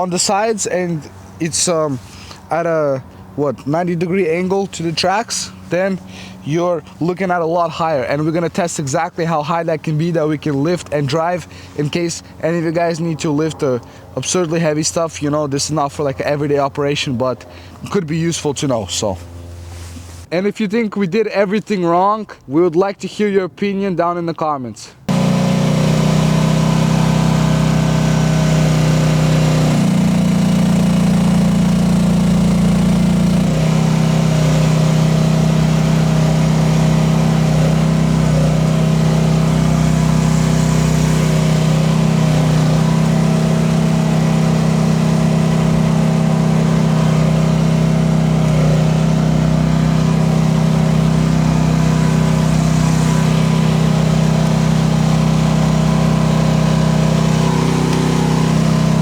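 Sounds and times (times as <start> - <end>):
excavator engine running: 25.1 - 59.0.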